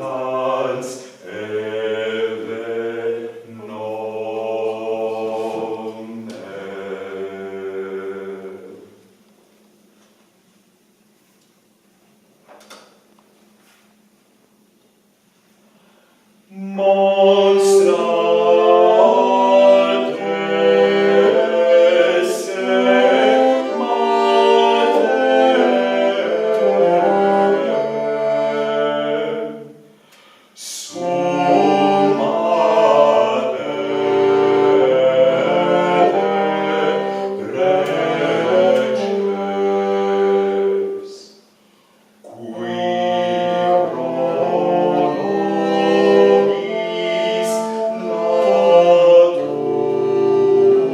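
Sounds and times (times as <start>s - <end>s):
early music trio playing: 16.5s - 50.9s.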